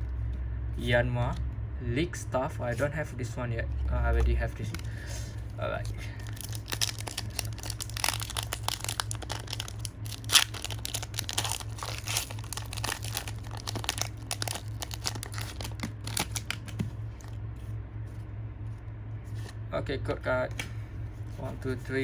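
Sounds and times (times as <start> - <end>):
foil wrapper crinkling and tearing: 4.5 - 17.4.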